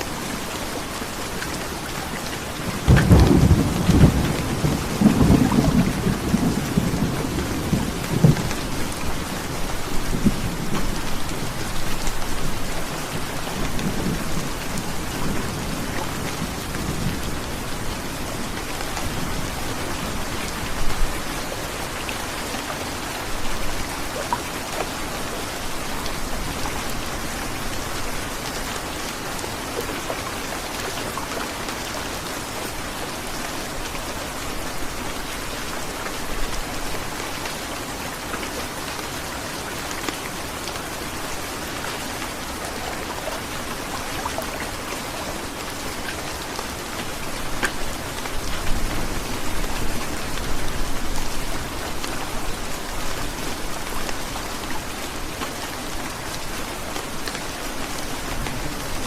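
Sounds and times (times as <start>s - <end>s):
heavy rain falling: 0.0s - 59.0s
thunder rumbling: 2.8s - 9.1s.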